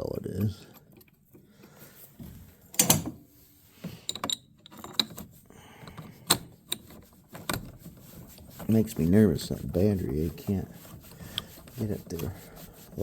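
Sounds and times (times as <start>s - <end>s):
tools clicking and knocking: 2.8s - 3.2s, 3.9s - 7.8s
metal scrape: 6.7s - 13.0s.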